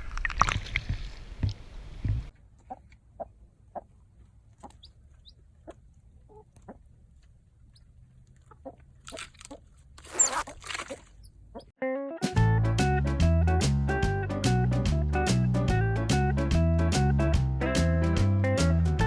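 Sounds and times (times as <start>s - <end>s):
faint clucking calls: 2.6s - 4.0s, 4.6s - 6.9s, 7.7s - 9.7s.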